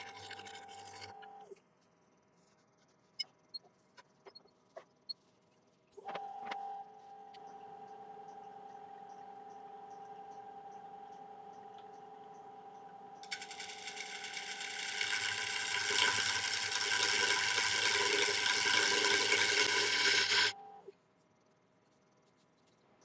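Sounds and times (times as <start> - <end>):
gouge cutting spinning wood: 0.0 - 1.1, 13.2 - 20.6
wood lathe motor hum: 13.2 - 20.6.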